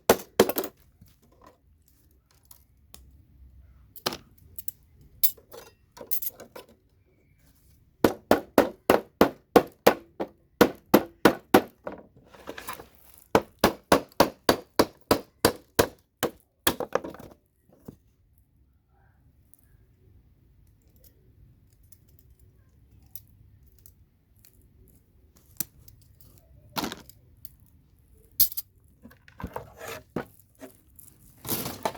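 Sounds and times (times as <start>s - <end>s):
hammer knocking on metal: 8.0s - 12.0s, 13.4s - 17.1s.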